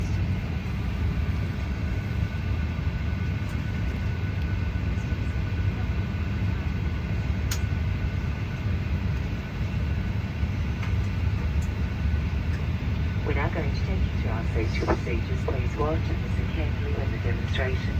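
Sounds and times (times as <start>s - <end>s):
airliner cabin hum: 0.0s - 17.9s
faint steady tones: 12.6s - 17.9s.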